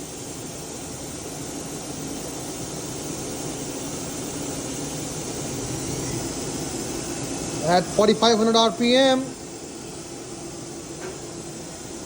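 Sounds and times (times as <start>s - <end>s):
machining center spindle whirring: 4.8s - 12.0s.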